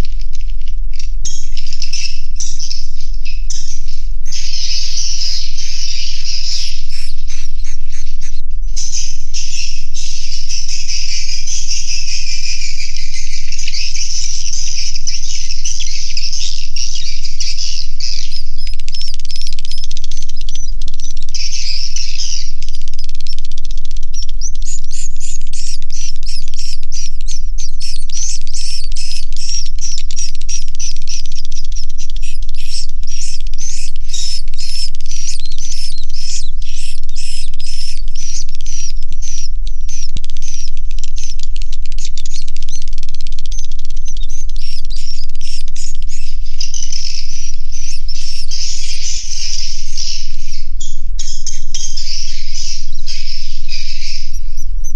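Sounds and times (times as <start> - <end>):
swiftlets twittering: 4.3 - 8.4, 17.6 - 54.9.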